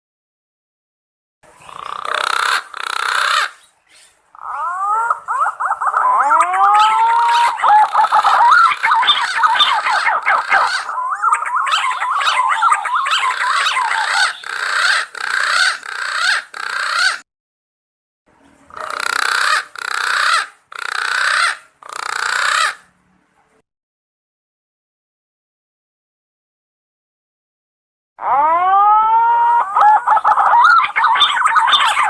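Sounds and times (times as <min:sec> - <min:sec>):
pigeons whistling calls: 0:01.8 - 0:17.1, 0:29.2 - 0:32.0.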